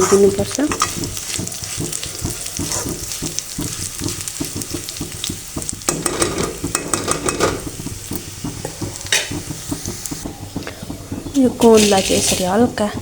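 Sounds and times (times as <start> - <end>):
food sizzling in a pan: 0.0 - 13.0
spoon stirring in a pan: 0.0 - 13.0.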